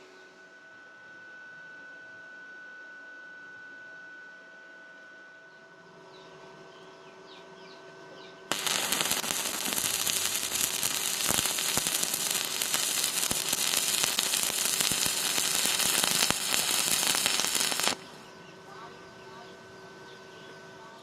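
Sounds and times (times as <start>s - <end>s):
welding arc crackling and sizzling: 8.5s - 18.2s.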